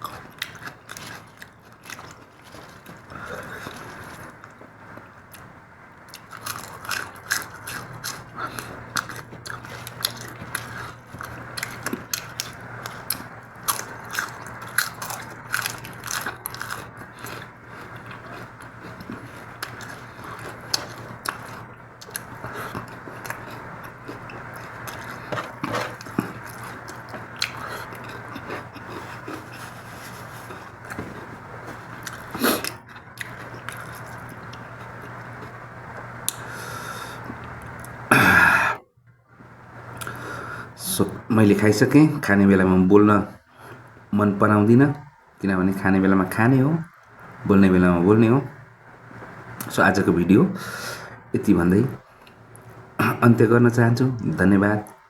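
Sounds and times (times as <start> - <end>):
steady low hum: 0.0 - 55.0
wet chewing and lip-smacking: 6.1 - 31.2.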